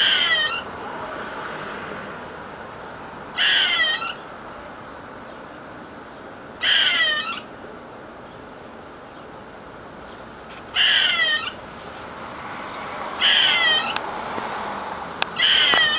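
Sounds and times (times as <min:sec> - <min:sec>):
squirrel calling: 0:00.0 - 0:00.7, 0:03.3 - 0:07.6, 0:08.2 - 0:11.7, 0:13.2 - 0:14.1, 0:15.2 - 0:15.9.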